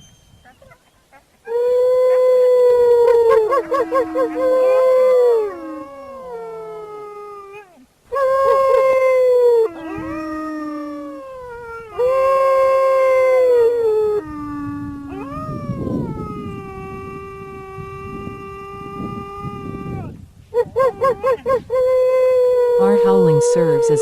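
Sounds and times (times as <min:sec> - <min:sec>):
wolves howling in chorus: 0:01.5 - 0:20.0, 0:20.7 - 0:24.0
rough low sound: 0:09.3 - 0:20.1.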